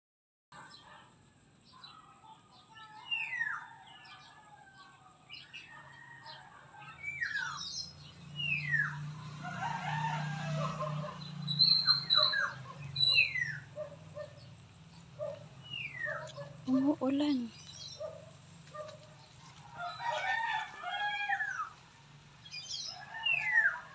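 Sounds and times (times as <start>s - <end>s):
bird chirps: 7.0s - 9.1s, 11.0s - 20.2s, 22.4s - 23.9s.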